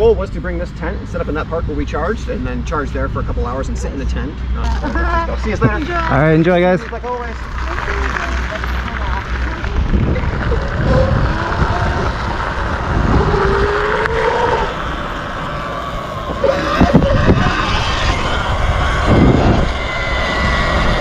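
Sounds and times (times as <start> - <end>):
low rumble: 0.0 - 21.0
wind buffeting microphone: 4.4 - 21.0.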